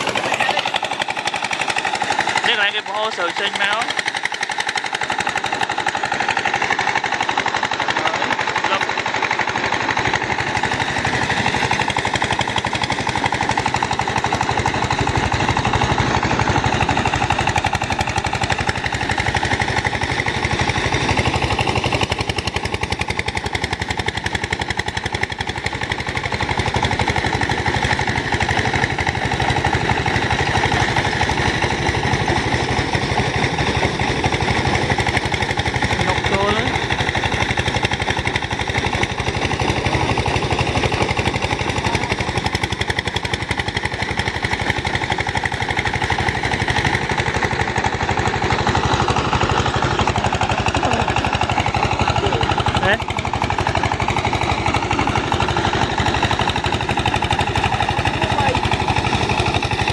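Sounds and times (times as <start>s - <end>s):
threshing machine running: 0.0s - 59.9s.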